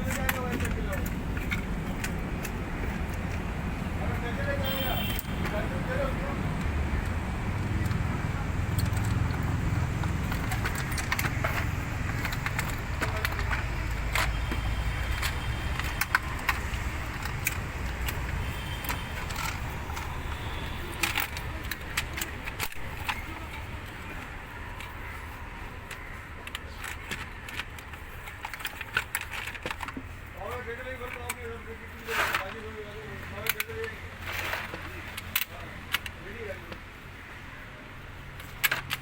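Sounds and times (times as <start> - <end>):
metal tools clinking: 8.7 - 23.6.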